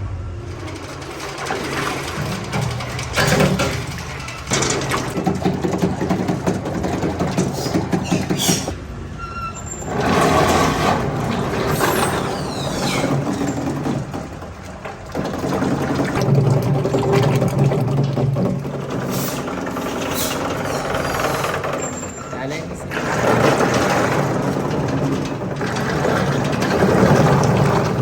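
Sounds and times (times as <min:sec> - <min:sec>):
low machine hum: 0:00.0 - 0:07.8
factory machinery clattering: 0:00.0 - 0:28.0.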